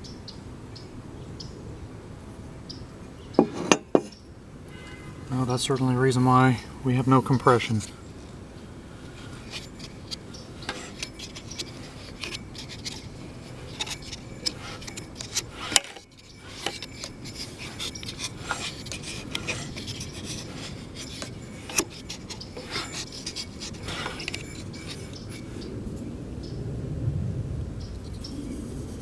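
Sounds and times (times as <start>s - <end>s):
metal tools clicking and scraping: 3.4s - 4.2s, 9.0s - 25.8s.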